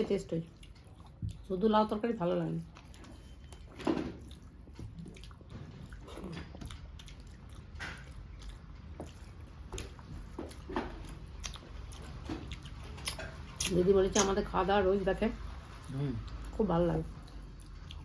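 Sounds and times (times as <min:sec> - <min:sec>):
person chewing with wet smacks: 0:00.1 - 0:18.0.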